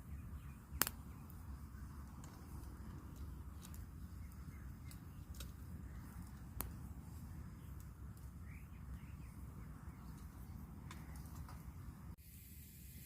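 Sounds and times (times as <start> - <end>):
bird chirping: 0.0 - 6.4, 7.1 - 12.0
steady low rumble: 0.0 - 12.2.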